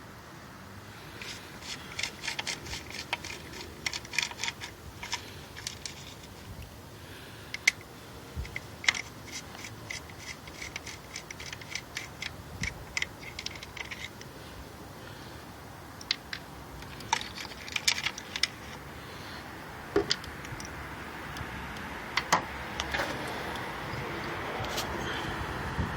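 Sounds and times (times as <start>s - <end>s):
ratchet clicking: 1.2s - 6.4s, 8.4s - 14.3s.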